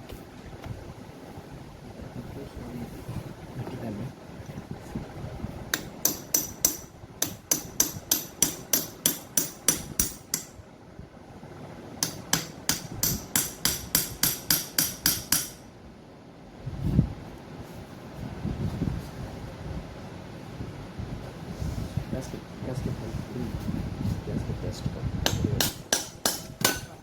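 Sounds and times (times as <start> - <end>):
hammer striking metal: 5.8 - 10.6, 12.0 - 15.7, 25.3 - 27.0.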